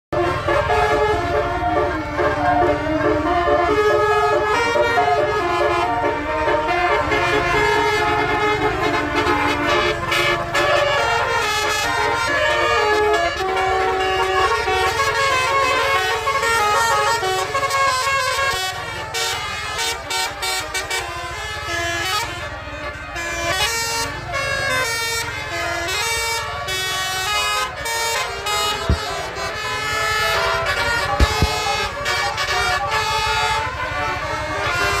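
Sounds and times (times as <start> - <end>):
multi-tone bus air horn melody: 0.1 - 35.0
low engine rumble: 21.7 - 34.7
short sharp knocks: 28.8 - 29.4, 31.2 - 31.8.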